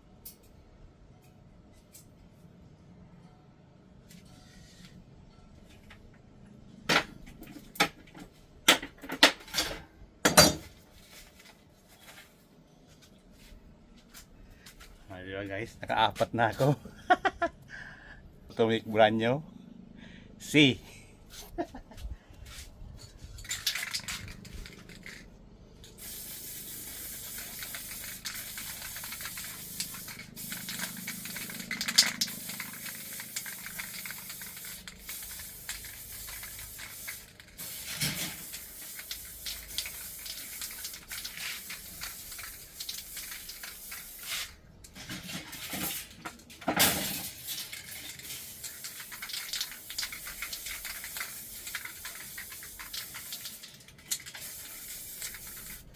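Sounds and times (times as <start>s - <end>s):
metal parts clicking and knocking: 23.4s - 26.0s, 27.2s - 44.2s, 44.8s - 55.9s
steady hiss: 26.0s - 44.6s, 46.8s - 55.9s.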